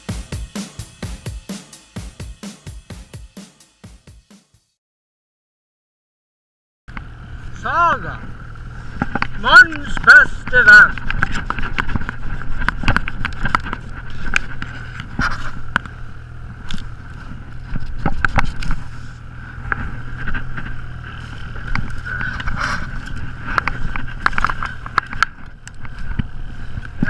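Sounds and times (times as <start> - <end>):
snowmobile engine running: 6.9 - 27.0.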